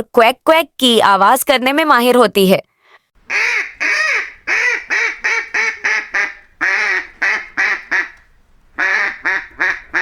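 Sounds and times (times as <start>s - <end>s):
duck quacking: 3.3s - 8.2s, 8.8s - 10.0s.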